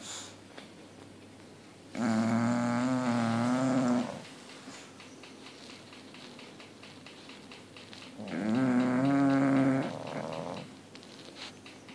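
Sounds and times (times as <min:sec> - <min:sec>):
dog snoring: 0:01.9 - 0:04.3, 0:08.2 - 0:10.8
dog breathing: 0:08.2 - 0:11.6.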